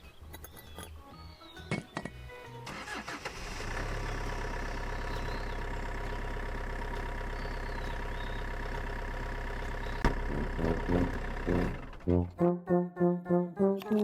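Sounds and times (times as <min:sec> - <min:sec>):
small engine idling: 0:02.7 - 0:12.4.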